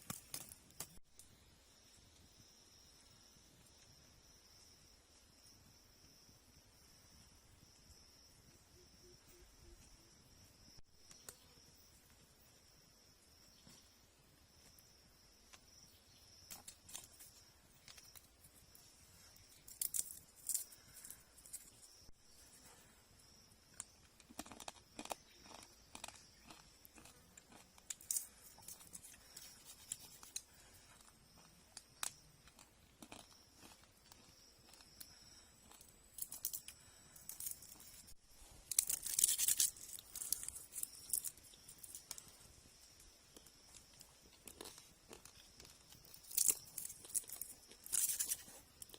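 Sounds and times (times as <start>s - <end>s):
dry plant material snapping: 38.7s - 42.2s.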